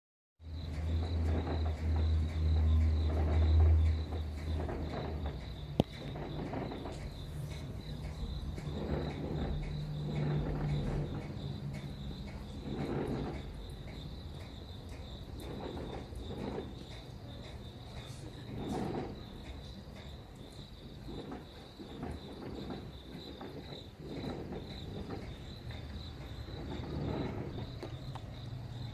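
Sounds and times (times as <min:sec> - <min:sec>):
crickets chirping: 0:00.4 - 0:28.9
low rumbling noise: 0:00.4 - 0:28.9
insects trilling: 0:00.5 - 0:28.9.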